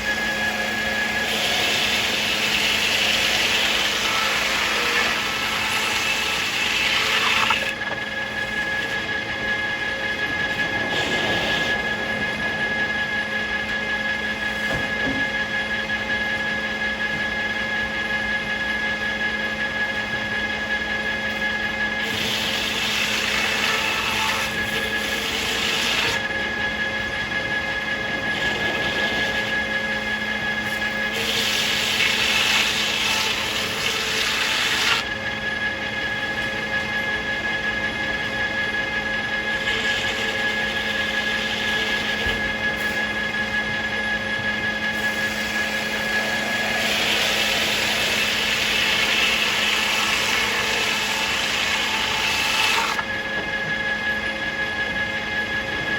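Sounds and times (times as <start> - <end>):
circular saw blade cutting log: 0.0 - 15.4, 21.2 - 35.2, 39.3 - 53.5
sawmill running whine: 0.0 - 55.9.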